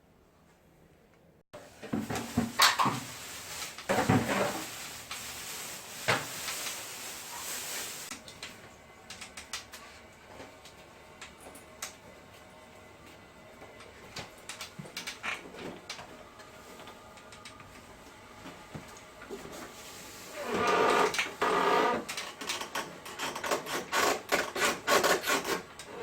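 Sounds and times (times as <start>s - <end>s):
hiss: 4.4s - 8.1s.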